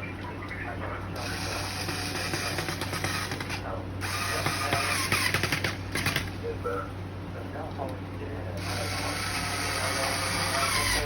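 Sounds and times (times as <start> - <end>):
tool whirring with ratchet clicks: 1.2 - 6.4, 8.6 - 11.0.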